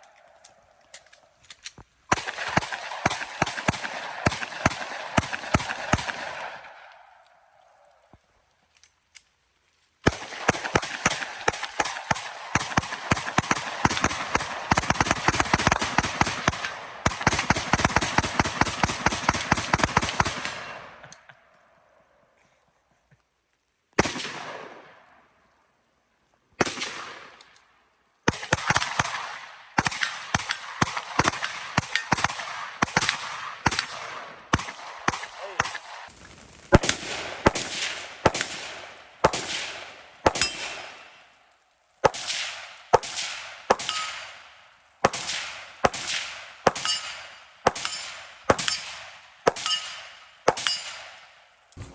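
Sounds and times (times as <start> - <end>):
rapid gunfire: 2.1 - 6.6, 10.1 - 20.9, 36.7 - 41.0, 42.0 - 44.4, 45.0 - 51.2
single gunshots: 36.8 - 41.1, 42.0 - 51.2.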